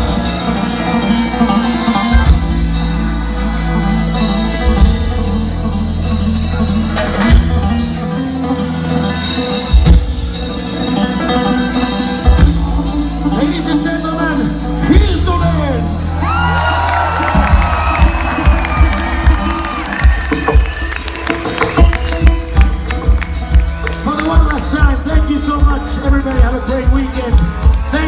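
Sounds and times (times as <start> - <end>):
bluegrass band playing: 0.0 - 28.0
people shouting: 16.2 - 21.0.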